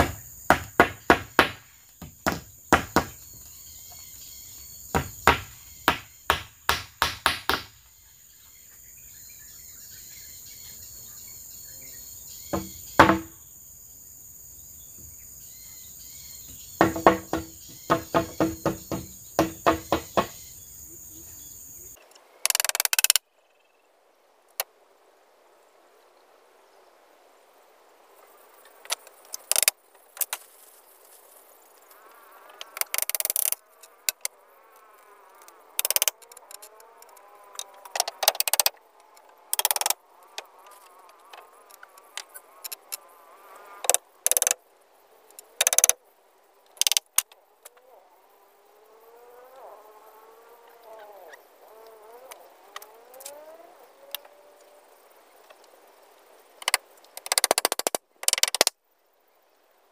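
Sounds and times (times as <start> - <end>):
sharp knocks and clatters: 0.0 - 3.2, 12.6 - 13.3, 16.8 - 20.4
faint pitched calls: 49.4 - 52.4.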